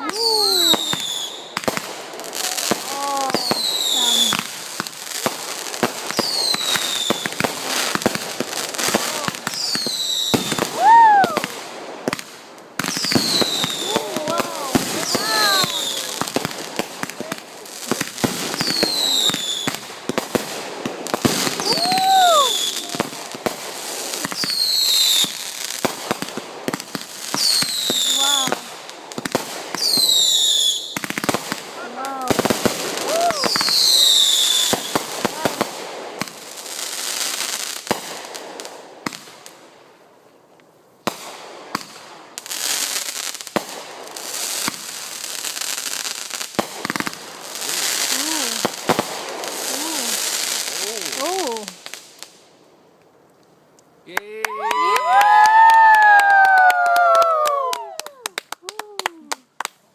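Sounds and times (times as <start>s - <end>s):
firework bangs and crackling pops: 0.0s - 40.4s, 41.0s - 52.8s, 54.2s - 59.9s
firework whistles falling in pitch: 21.5s - 23.0s.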